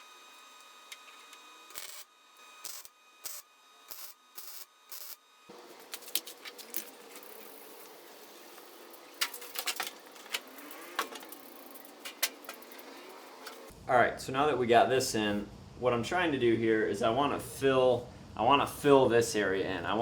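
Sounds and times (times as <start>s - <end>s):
metallic clicks and clanks: 9.2s - 13.7s.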